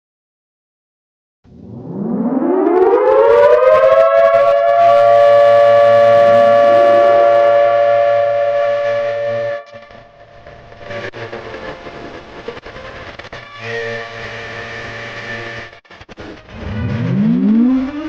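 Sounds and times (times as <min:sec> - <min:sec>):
civil defense siren wailing: 0:01.5 - 0:10.3, 0:16.5 - 0:18.0.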